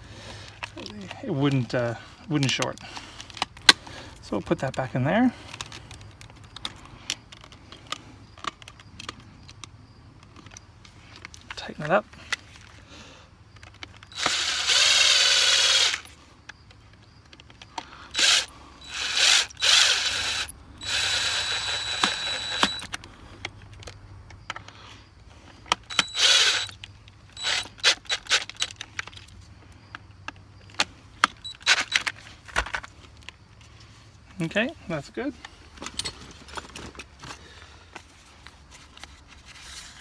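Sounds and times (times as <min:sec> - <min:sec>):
sharp clicks: 0:13.6 - 0:24.8, 0:25.6 - 0:32.2
cordless drill running: 0:14.1 - 0:16.2, 0:18.1 - 0:23.0, 0:25.8 - 0:28.7.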